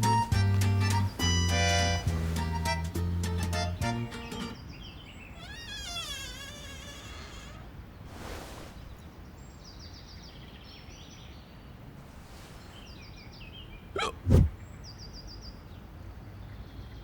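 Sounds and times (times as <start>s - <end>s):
high chirping animal calls: 5.2s - 7.8s
wavering animal call: 5.4s - 7.7s
brief hiss: 7.3s - 9.1s.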